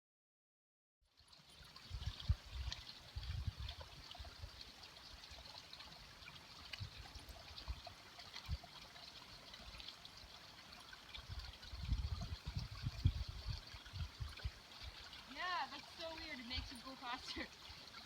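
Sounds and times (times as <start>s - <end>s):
water trickling: 1.0s - 18.0s
wind rumble on microphone: 1.8s - 4.6s, 6.7s - 8.7s, 11.2s - 14.7s.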